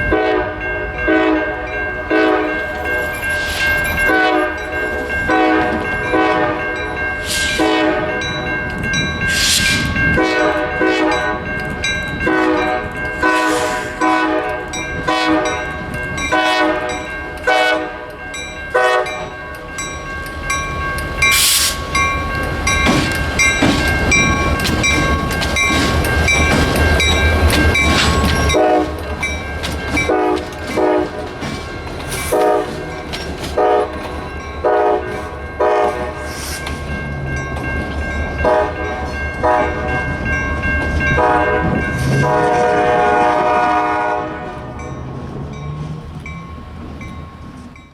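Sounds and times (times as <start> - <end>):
diesel locomotives rumbling: 0.0 - 47.9
locomotive air horn blasts: 0.1 - 2.6, 4.1 - 4.6, 5.3 - 8.2, 10.2 - 11.5, 12.2 - 15.6, 16.3 - 18.1, 18.8 - 19.3, 28.6 - 29.0, 30.1 - 31.2, 32.3 - 32.8, 33.6 - 34.0, 34.6 - 36.3, 38.4 - 39.9, 41.2 - 44.9.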